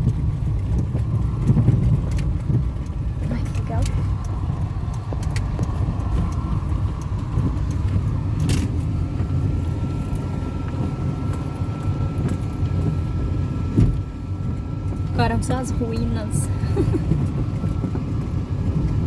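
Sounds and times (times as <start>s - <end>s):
small clicks and rattles: 0.0s - 13.2s
car engine rumble: 0.0s - 19.0s
road noise: 0.0s - 19.0s.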